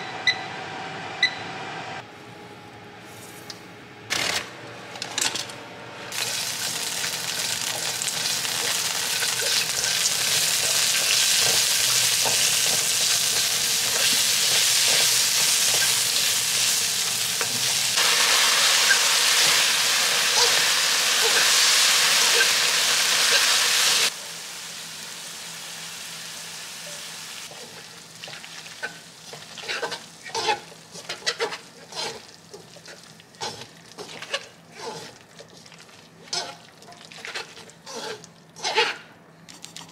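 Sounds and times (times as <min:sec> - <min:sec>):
food sizzling in a frying pan: 0:06.1 - 0:35.5
utensil scraping in pan: 0:27.5 - 0:39.1.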